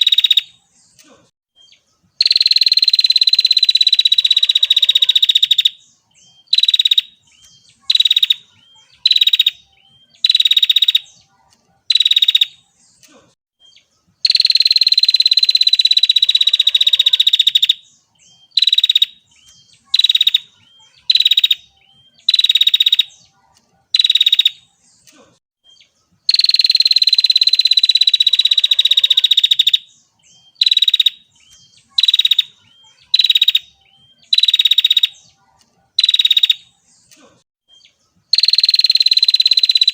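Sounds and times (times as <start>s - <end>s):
bird buzzy trill: 2.2s - 11.2s, 14.2s - 23.3s, 26.3s - 35.3s, 38.3s - 39.9s.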